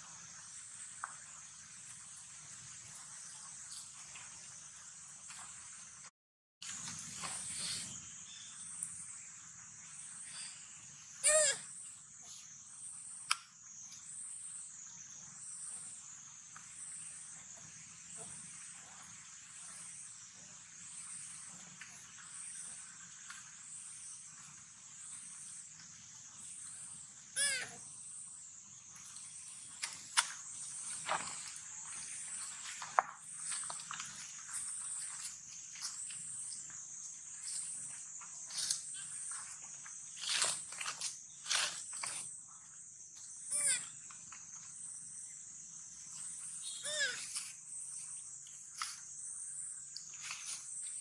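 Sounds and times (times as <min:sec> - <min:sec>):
insects droning: 0:00.0 - 0:51.0
steady high-pitched hiss: 0:00.0 - 0:51.0
baby monkey squealing: 0:11.2 - 0:11.6, 0:27.4 - 0:27.8, 0:43.5 - 0:43.9, 0:46.8 - 0:47.3.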